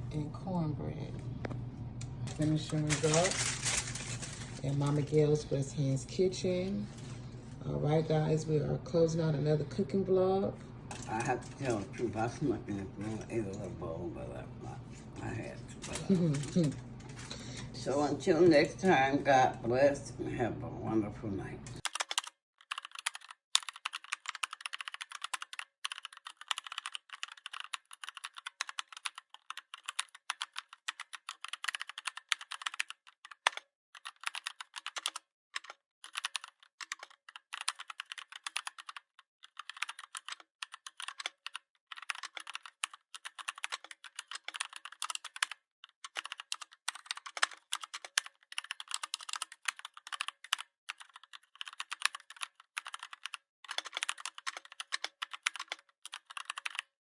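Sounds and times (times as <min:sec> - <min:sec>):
rapid keyboard typing: 0:02.3 - 0:05.3, 0:10.9 - 0:19.1, 0:21.6 - 0:57.0.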